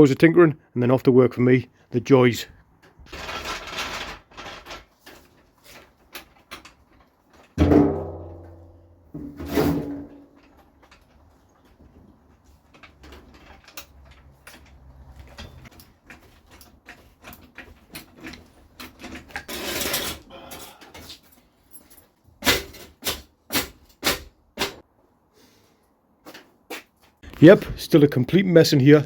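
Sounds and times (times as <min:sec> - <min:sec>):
metal tools clinking: 0:12.7 - 0:23.2.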